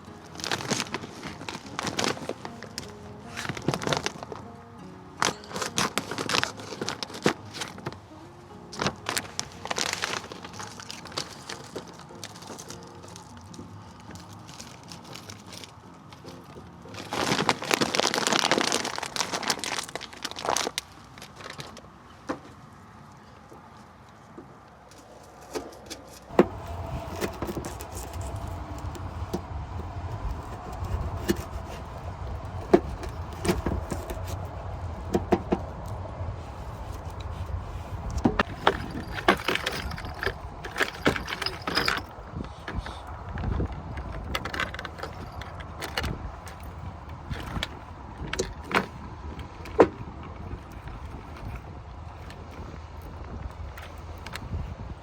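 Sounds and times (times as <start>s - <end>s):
wind rumbling on microphone: 26.3s - 55.0s
rattling: 36.6s - 49.0s.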